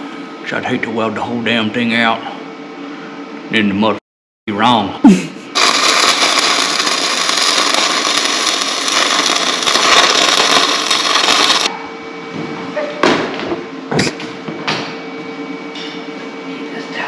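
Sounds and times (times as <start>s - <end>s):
welding arc crackling: 5.6s - 11.7s.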